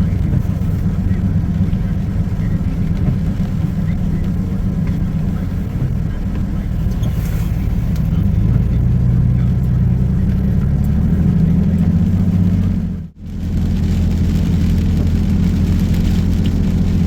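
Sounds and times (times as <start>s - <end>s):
vehicle engine humming: 0.0s - 17.0s.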